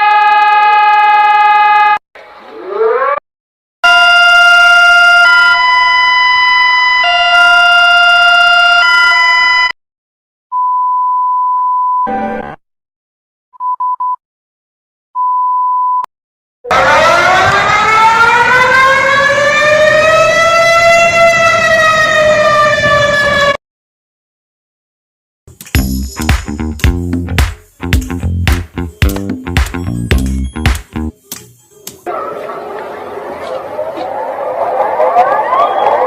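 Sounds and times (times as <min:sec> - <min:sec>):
siren tone rising and falling: 0:00.0 - 0:03.2, 0:16.6 - 0:23.6, 0:32.0 - 0:36.0
single beep tone: 0:10.5 - 0:12.2, 0:13.6 - 0:14.2, 0:15.2 - 0:16.1
alert alarm chord: 0:25.8 - 0:31.9.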